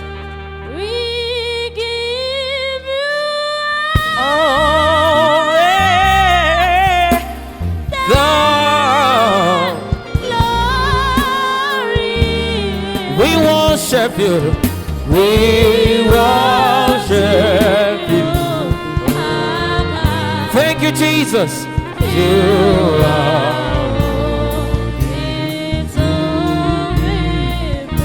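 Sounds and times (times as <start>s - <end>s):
sustained bass tones: 4.0s - 28.0s
person singing long held notes: 7.9s - 28.0s.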